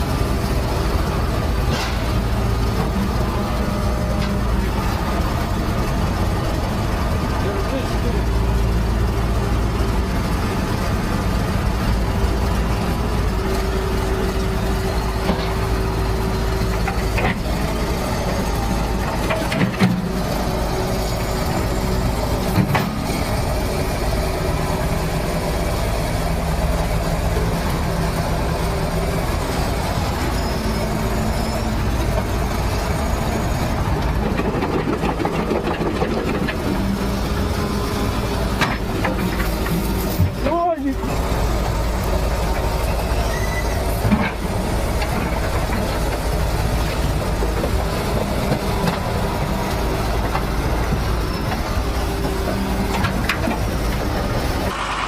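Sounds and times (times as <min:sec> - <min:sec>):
heavy vehicle engine droning: 0:00.0 - 0:55.0.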